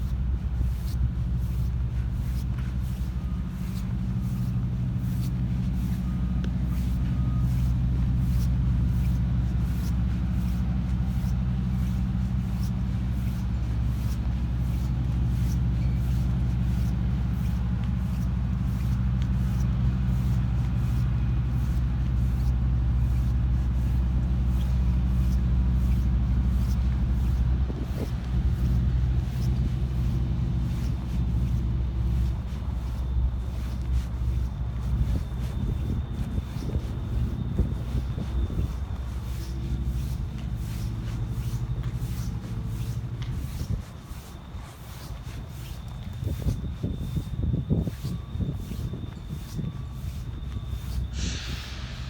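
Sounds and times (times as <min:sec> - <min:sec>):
engine droning: 0:00.0 - 0:52.0.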